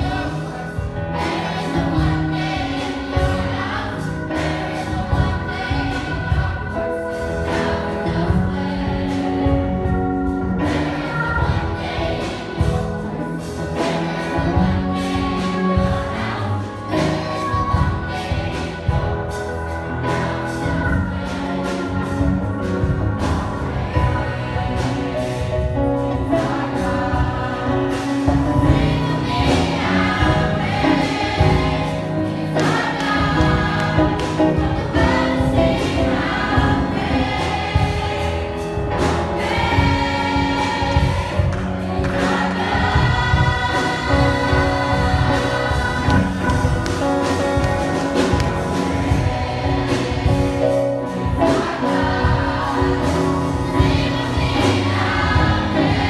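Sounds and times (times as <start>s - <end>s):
choir singing gospel: 0.0s - 56.0s
instrumental backing with beat: 0.0s - 56.0s.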